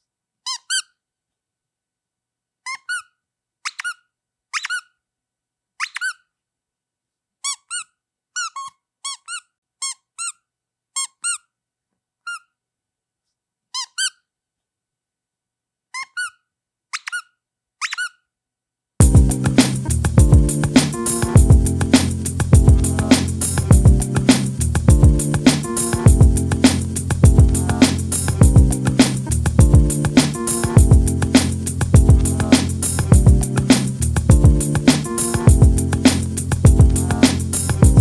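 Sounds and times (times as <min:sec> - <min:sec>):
rubber duck squeaking: 0:02.7 - 0:04.9, 0:07.5 - 0:10.4, 0:16.0 - 0:18.2
music: 0:19.0 - 0:38.0.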